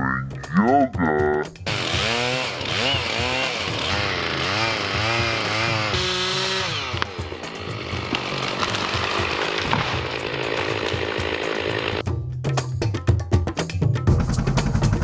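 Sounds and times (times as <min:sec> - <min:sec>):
chainsaw revving: 0:01.7 - 0:12.0.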